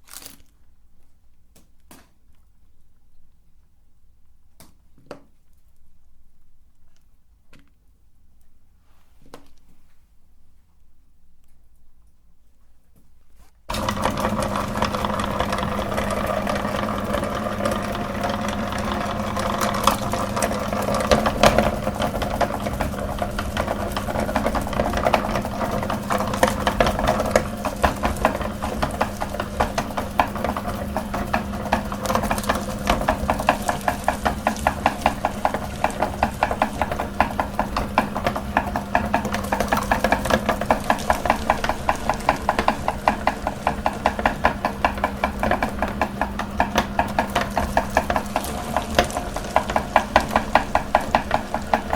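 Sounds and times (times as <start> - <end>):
candy crunching and cracking: 0.0 - 3.4
meat grinder motor humming: 13.7 - 51.9.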